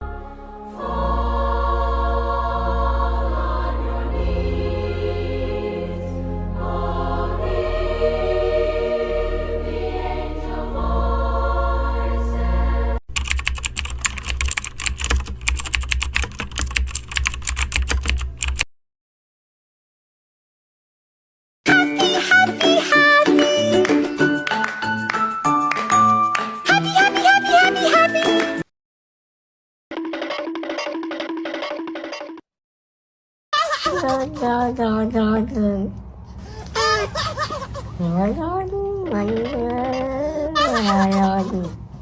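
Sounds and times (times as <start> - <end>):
keyboard typing clicks: 13.1 - 18.7.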